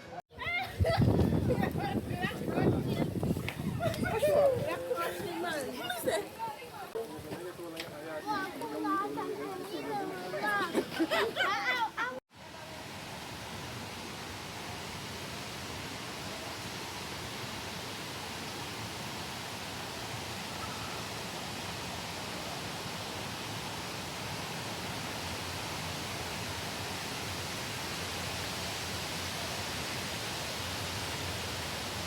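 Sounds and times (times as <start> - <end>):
waterfall rushing: 12.5 - 32.0.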